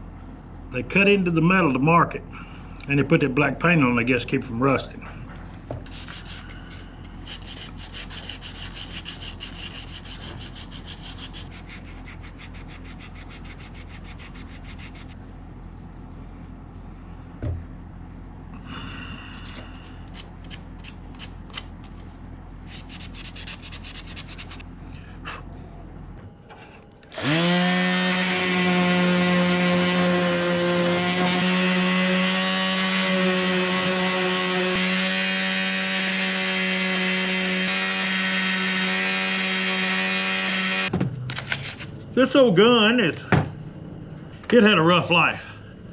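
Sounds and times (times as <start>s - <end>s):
hand rubbing metal: 5.9s - 16.2s, 22.6s - 24.6s
electric power tool humming: 27.1s - 40.9s.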